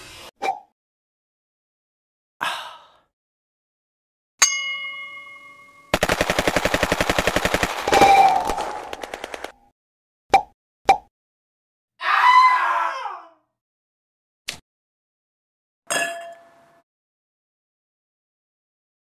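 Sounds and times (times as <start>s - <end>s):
bell-like ding: 4.4s - 6.0s
rapid rattle of sharp clicks: 5.9s - 7.9s, 8.7s - 9.6s.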